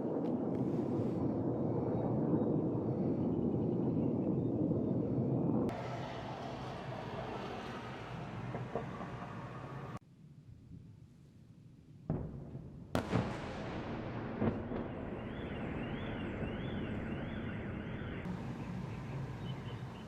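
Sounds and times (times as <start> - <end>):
explosions booming: 12.1 - 18.3.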